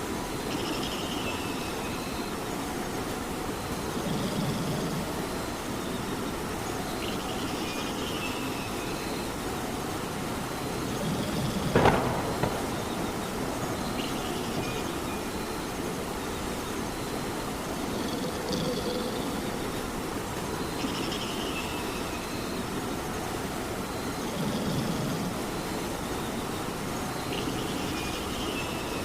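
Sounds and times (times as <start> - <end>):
steady rain: 0.0 - 29.0.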